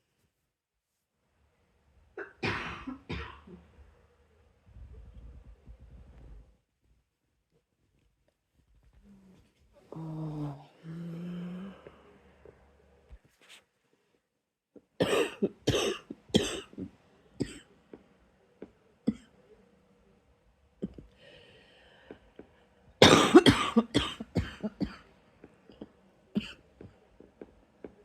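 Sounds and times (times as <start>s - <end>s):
person coughing: 2.2s - 3.6s, 15.0s - 17.6s, 23.0s - 25.0s.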